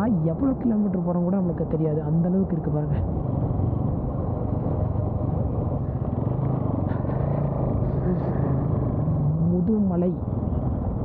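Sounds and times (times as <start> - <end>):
motorcycle engine running: 3.0 - 11.0.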